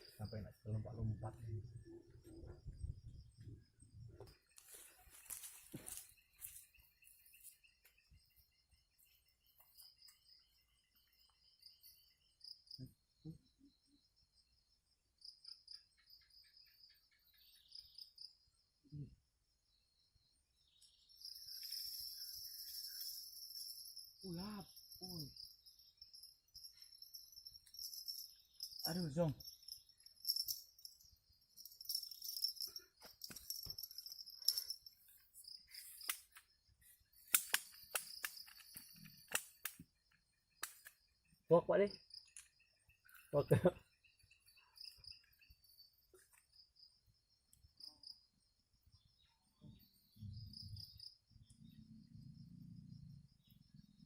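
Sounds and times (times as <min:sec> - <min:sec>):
crickets chirping: 0:00.0 - 0:54.0
sharp clicks and clinks: 0:31.6 - 0:34.9.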